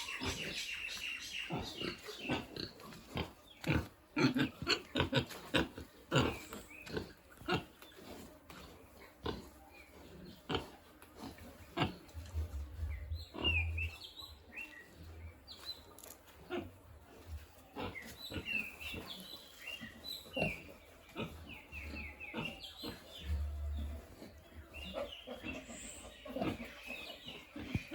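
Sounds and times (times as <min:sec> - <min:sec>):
pigs grunting and snuffling: 0:00.0 - 0:27.9
small birds chirping: 0:00.0 - 0:27.9.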